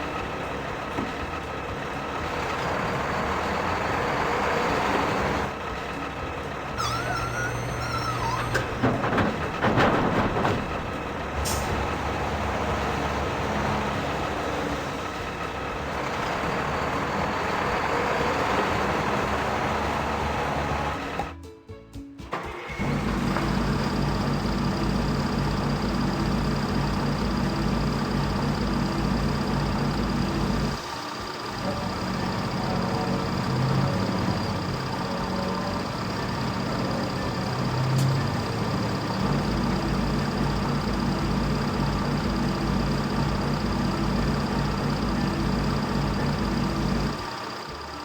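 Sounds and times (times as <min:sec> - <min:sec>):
engine idling: 0:22.4 - 0:48.0.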